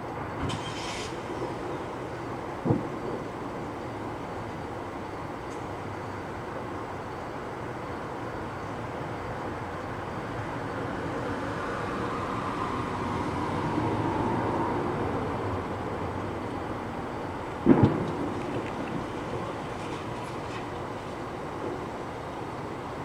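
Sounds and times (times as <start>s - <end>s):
firework bang: 2.6s - 3.3s, 17.6s - 20.7s.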